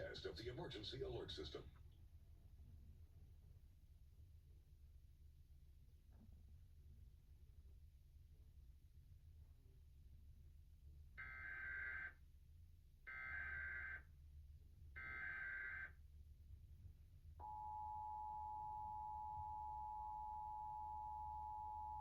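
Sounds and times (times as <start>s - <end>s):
steady two-tone alarm: 11.2s - 12.2s, 13.1s - 14.1s, 15.0s - 16.0s, 17.4s - 22.0s.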